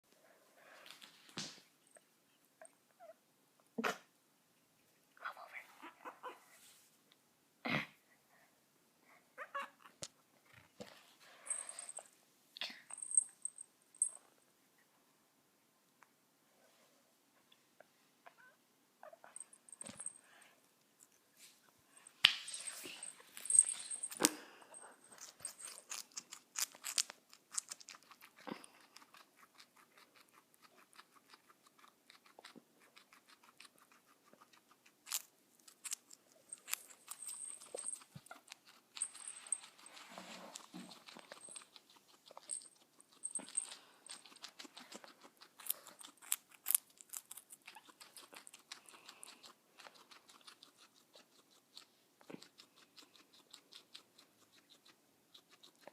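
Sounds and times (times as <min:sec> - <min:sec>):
guinea pig crunching food: 0:24.1 - 0:55.9.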